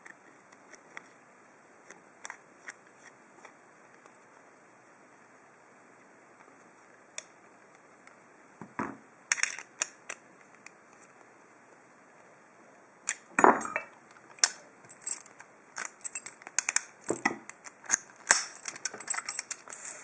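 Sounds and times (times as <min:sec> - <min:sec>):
padlock metal clicks and clinks: 0:14.4 - 0:19.8.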